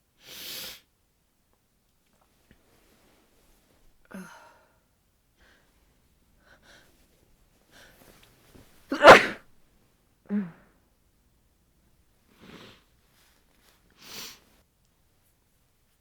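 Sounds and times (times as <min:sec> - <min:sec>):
person sneezing: 0:08.9 - 0:09.4.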